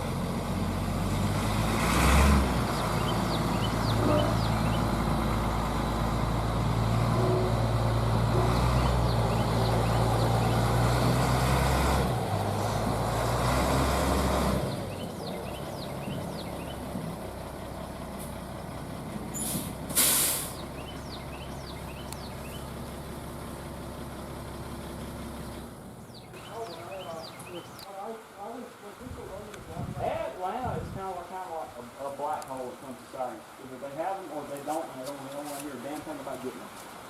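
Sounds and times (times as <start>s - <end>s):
engine humming: 0.0s - 37.0s
short sharp air hiss: 19.4s - 20.6s.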